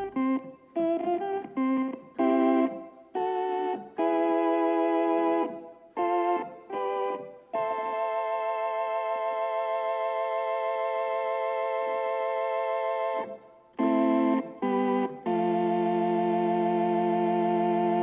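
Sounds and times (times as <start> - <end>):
electronic organ chords: 0.0 - 18.0.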